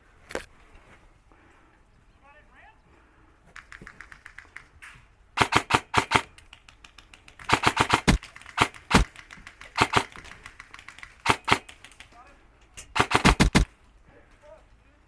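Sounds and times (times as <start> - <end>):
airsoft rifle rapid shots: 3.6 - 4.7, 5.4 - 12.2, 12.8 - 13.7.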